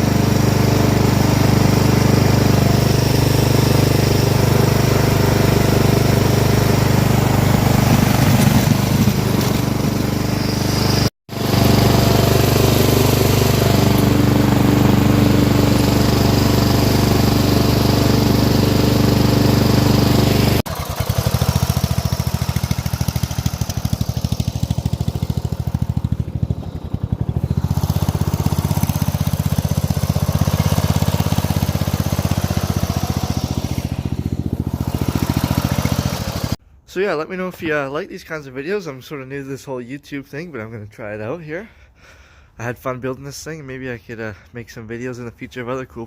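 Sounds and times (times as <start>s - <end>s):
lawn tractor engine running: 0.0s - 36.6s.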